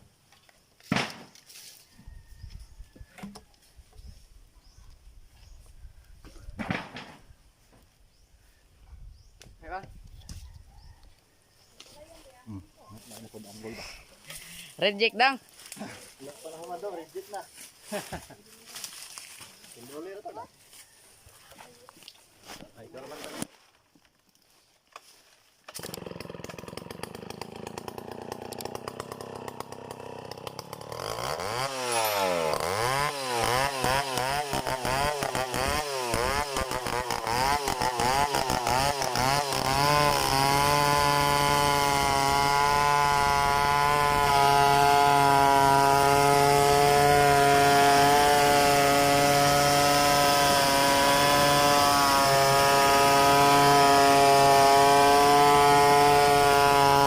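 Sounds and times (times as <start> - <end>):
chainsaw engine revving: 25.7 - 57.0.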